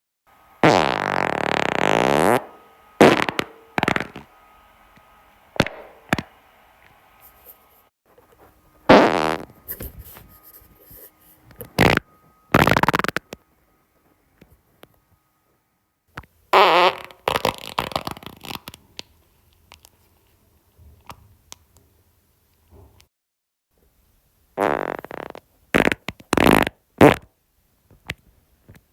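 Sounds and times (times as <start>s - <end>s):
person farting: 0.6s - 4.3s, 8.9s - 9.5s, 11.7s - 13.3s, 16.5s - 18.7s, 24.6s - 27.3s.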